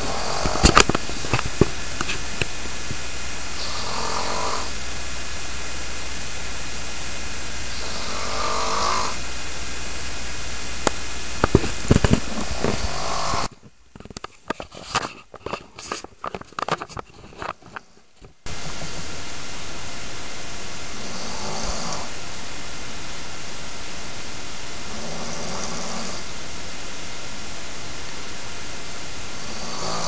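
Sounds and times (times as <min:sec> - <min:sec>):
person snoring: 0:00.0 - 0:01.4, 0:03.5 - 0:04.8, 0:07.7 - 0:09.2, 0:11.7 - 0:13.5, 0:20.9 - 0:22.2, 0:24.8 - 0:26.4, 0:29.3 - 0:30.0
steady hiss: 0:00.0 - 0:30.0.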